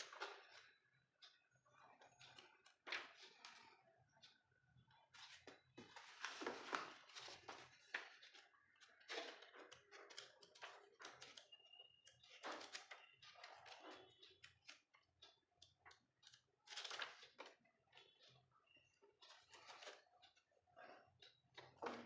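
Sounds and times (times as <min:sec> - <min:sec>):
book and packaging rustling: 0:05.2 - 0:11.4.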